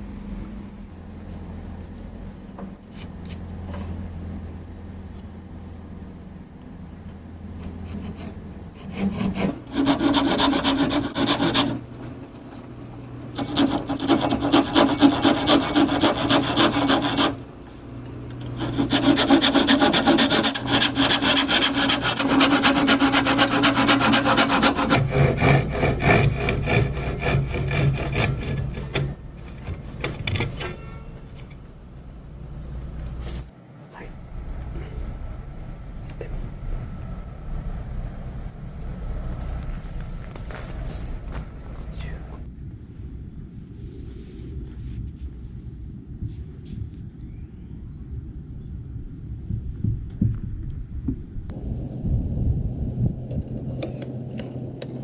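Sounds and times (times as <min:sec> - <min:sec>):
wood rasping or sanding: 0:07.8 - 0:12.6, 0:13.3 - 0:17.4, 0:18.4 - 0:30.8.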